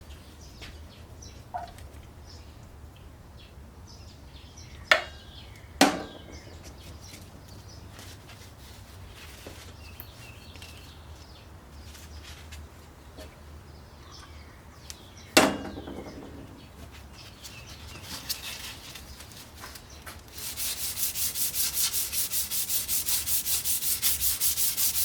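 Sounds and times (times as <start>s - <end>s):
sharp ringing knocks: 4.9s - 5.2s, 5.8s - 6.7s, 15.4s - 16.6s.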